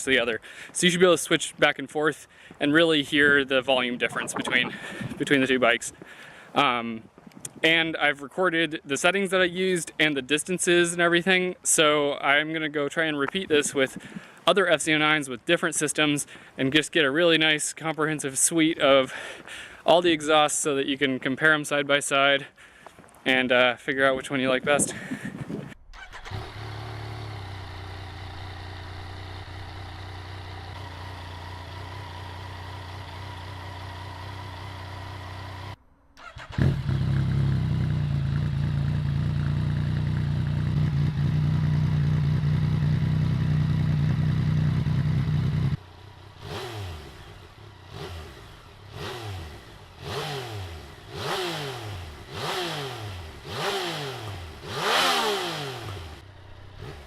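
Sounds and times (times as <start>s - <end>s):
motorcycle throttle blips: 24.8s - 57.0s
motorcycle engine idling: 25.1s - 51.2s.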